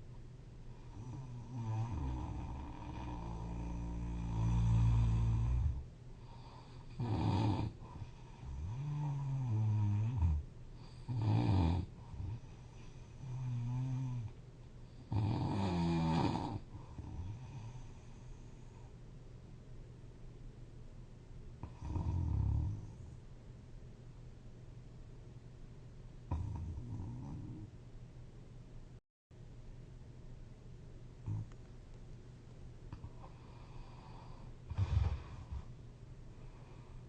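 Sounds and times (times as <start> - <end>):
person snoring loudly: 0.9 - 5.8, 6.9 - 7.8, 15.1 - 16.6
loud rumbling snore: 34.7 - 35.7.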